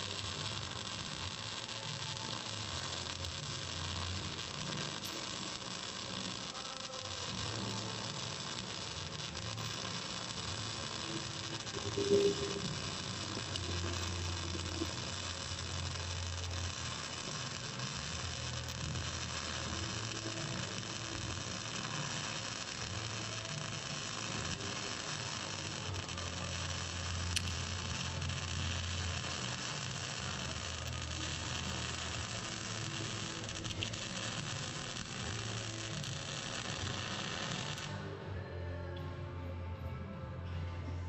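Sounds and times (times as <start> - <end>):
welding arc crackling hiss: 0.0 - 38.0
low hum: 11.0 - 17.2.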